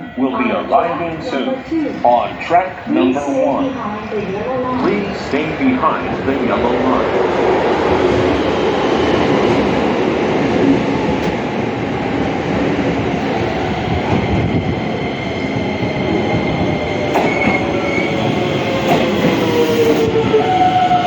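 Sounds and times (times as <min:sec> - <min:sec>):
train wheels on rail: 0:04.6 - 0:21.0.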